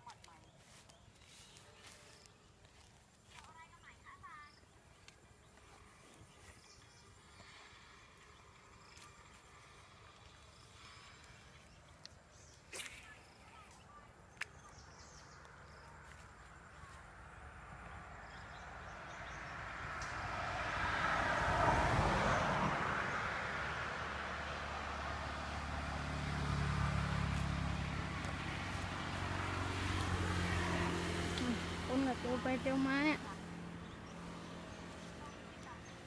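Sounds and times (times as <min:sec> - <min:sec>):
vehicle passing: 0:00.5 - 0:11.8, 0:14.8 - 0:36.0
low engine hum: 0:13.4 - 0:36.0.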